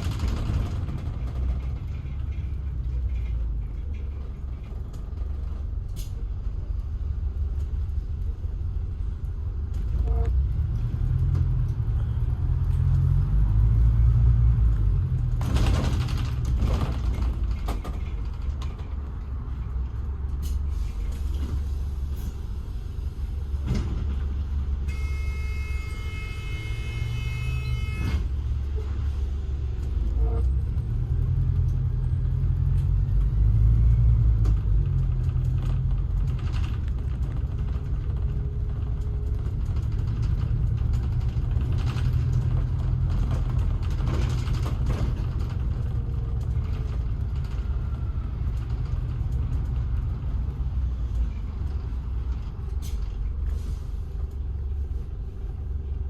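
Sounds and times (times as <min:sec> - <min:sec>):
low rumble of road vehicle: 0:00.0 - 0:56.0.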